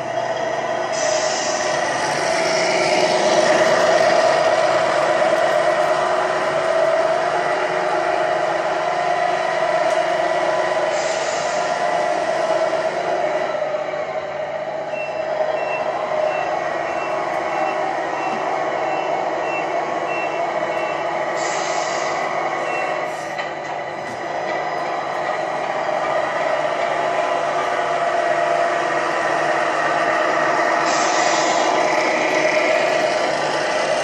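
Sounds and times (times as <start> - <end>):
diesel engine sound: 0.0 - 34.0
air-brake hiss: 0.9 - 3.1, 10.7 - 12.5, 21.3 - 23.5, 30.6 - 33.1
reversing beeps: 14.9 - 21.1, 22.6 - 23.0.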